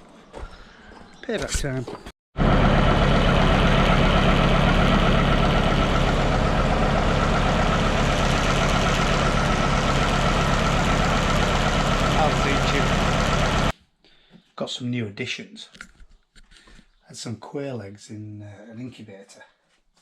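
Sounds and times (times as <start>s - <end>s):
crop sprayer engine running: 2.4s - 13.7s.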